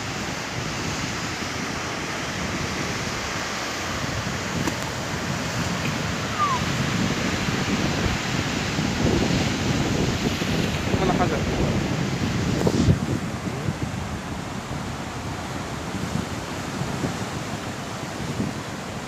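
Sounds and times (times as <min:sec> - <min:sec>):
sea surf: 0:00.0 - 0:19.0
wind buffeting microphone: 0:00.0 - 0:19.0
short falling chirp: 0:06.3 - 0:06.6.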